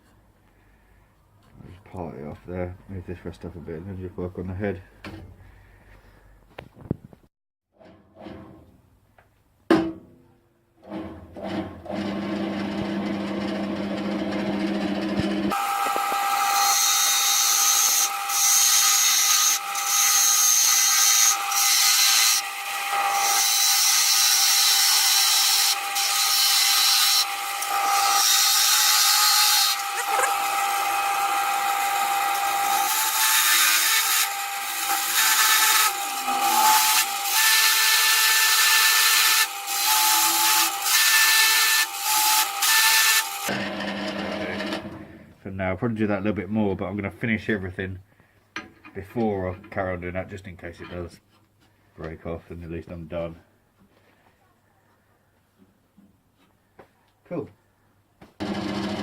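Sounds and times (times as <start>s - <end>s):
sharp knock: 9.7s - 10.2s
chisel cutting spinning wood: 10.8s - 45.1s, 58.4s - 59.0s.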